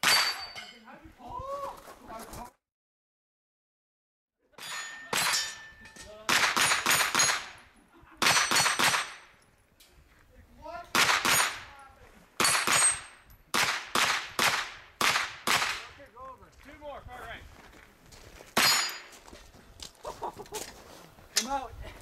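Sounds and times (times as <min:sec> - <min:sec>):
steel targets ringing: 0:00.0 - 0:00.8, 0:04.6 - 0:07.6, 0:18.6 - 0:19.2
carbine gunshots: 0:06.3 - 0:07.6, 0:08.2 - 0:09.3, 0:10.9 - 0:11.7, 0:12.4 - 0:15.9.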